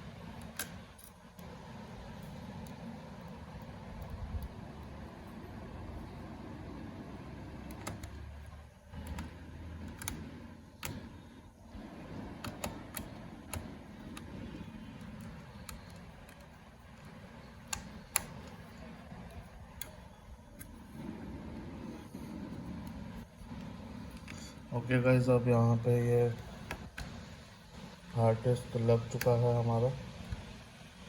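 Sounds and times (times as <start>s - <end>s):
steady low hum: 0.0s - 31.0s
screwdriver and small parts clicking: 0.4s - 1.5s, 12.4s - 20.8s.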